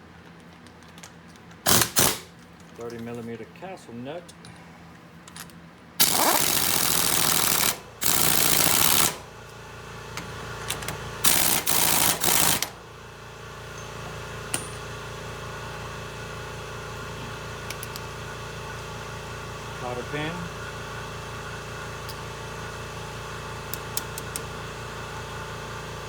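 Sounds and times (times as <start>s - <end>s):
impact wrench bursts: 1.6s - 2.3s, 6.0s - 9.3s, 10.7s - 12.8s
steady machine hum: 5.9s - 26.0s.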